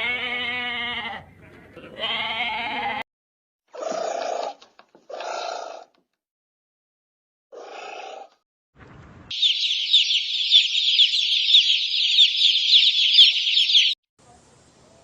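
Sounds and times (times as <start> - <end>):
many small birds chirping: 9.3 - 14.0.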